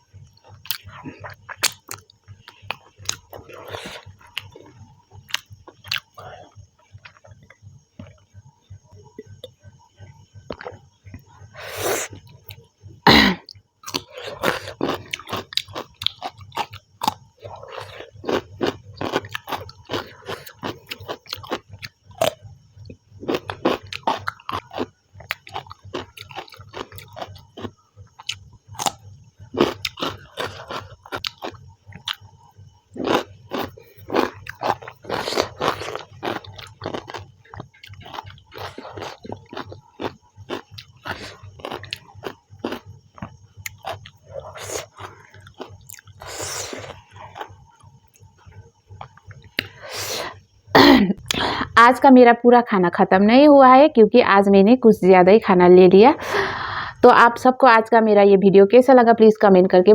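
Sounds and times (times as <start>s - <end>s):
chewing and biting food: 0.3s - 8.3s, 10.5s - 12.7s, 13.5s - 50.4s
wet mouth clicks and smacks: 49.0s - 49.8s.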